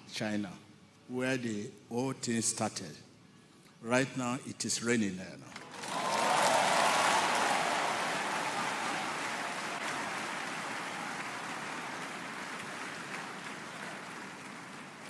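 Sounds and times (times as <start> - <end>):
congregation applauding: 5.6 - 15.0.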